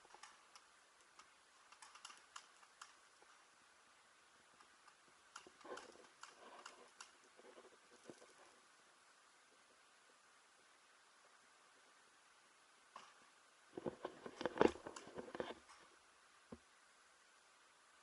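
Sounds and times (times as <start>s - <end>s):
faint clicks and taps: 0.0s - 3.5s, 4.5s - 8.6s, 12.9s - 16.7s.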